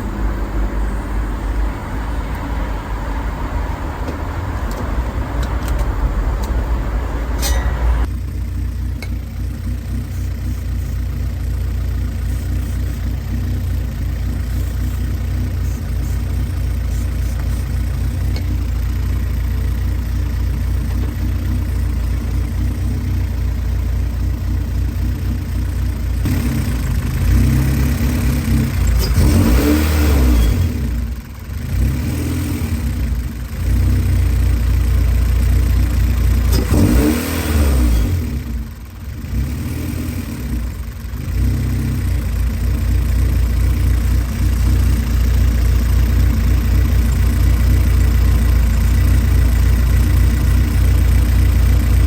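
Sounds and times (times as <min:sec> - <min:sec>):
car engine revving: 0:00.0 - 0:08.1, 0:26.1 - 0:52.0
car engine idling: 0:00.0 - 0:52.0.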